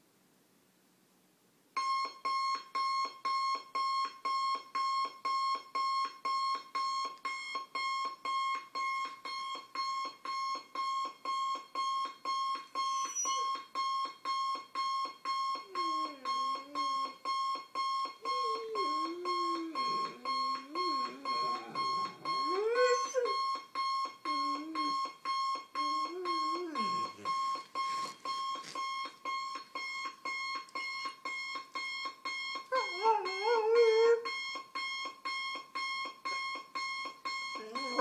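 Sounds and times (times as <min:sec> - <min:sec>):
alarm clock beeping: 0:01.8 - 0:38.0
dog howling: 0:18.2 - 0:23.4, 0:26.0 - 0:27.2, 0:32.7 - 0:34.3, 0:37.6 - 0:38.0.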